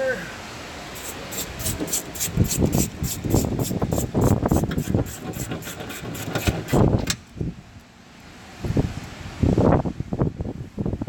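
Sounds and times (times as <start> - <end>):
ratchet wrench clicking: 1.0 - 7.3.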